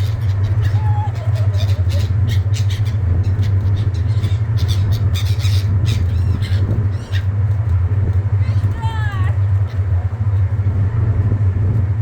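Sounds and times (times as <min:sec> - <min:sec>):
seagulls squawking: 0:00.0 - 0:07.4
steady low drone: 0:00.0 - 0:12.0.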